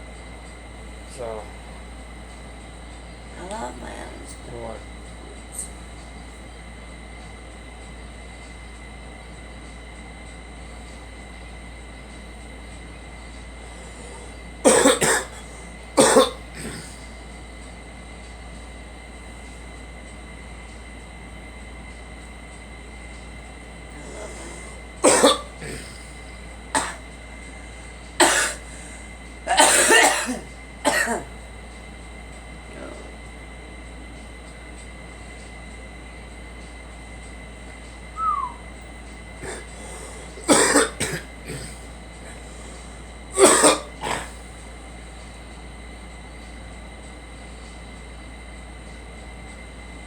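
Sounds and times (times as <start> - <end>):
girl coughing: 14.6 - 17.0, 24.0 - 26.0, 26.8 - 27.0, 28.2 - 28.7, 29.5 - 31.3, 39.4 - 42.4, 43.4 - 44.4.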